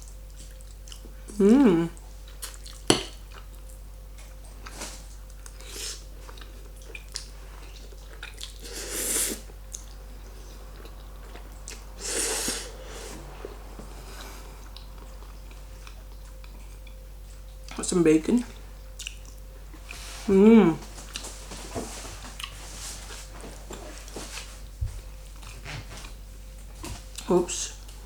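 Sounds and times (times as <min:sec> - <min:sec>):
chewing and mouth sounds: 0:00.0 - 0:01.4, 0:02.2 - 0:17.8, 0:18.9 - 0:20.1, 0:20.9 - 0:21.4, 0:22.2 - 0:22.6.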